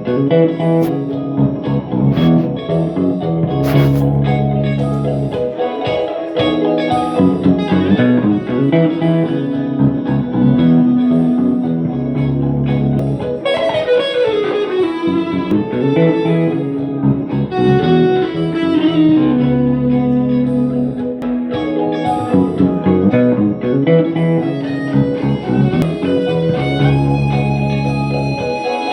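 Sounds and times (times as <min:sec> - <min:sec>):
electric guitar playing: 0:00.0 - 0:28.9.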